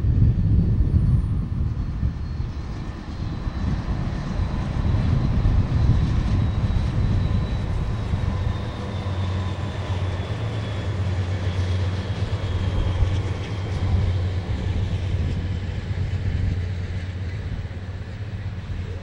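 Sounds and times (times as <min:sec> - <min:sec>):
train engine drone: 0:00.0 - 0:19.0.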